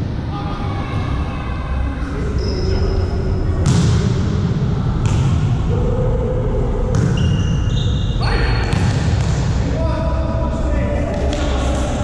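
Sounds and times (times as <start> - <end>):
volleyball hits: 3.6 - 4.2, 8.6 - 9.6
sneakers squeaking on court: 7.0 - 8.9.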